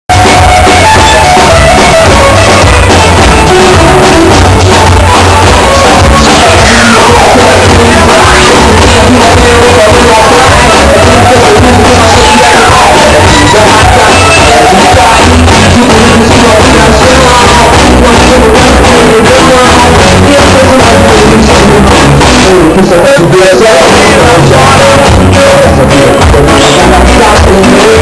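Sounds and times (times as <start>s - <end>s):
loud music with singing: 0.1s - 28.0s.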